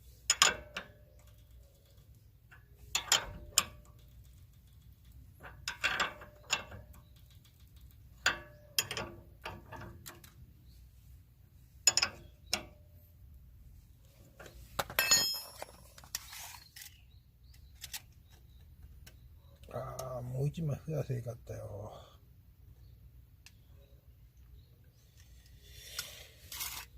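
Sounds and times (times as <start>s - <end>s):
hand tools clicking and knocking: 2.5s - 10.4s, 11.8s - 12.8s, 14.4s - 16.3s
ringing metallic clang: 15.0s - 15.9s.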